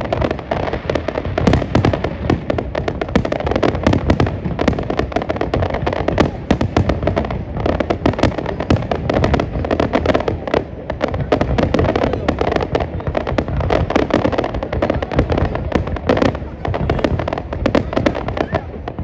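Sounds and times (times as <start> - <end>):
fireworks cracks and bangs: 0.0 - 19.0.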